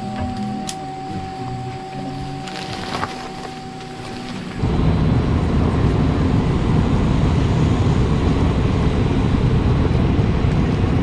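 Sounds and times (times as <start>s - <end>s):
loud low rumbling: 3.6s - 11.0s.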